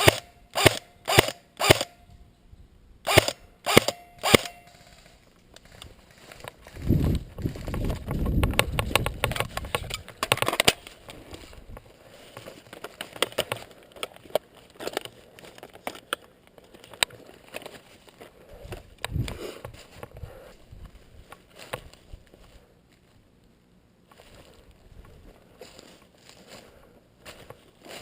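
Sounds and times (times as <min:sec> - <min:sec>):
rustling against microphone: 0:04.7 - 0:23.2.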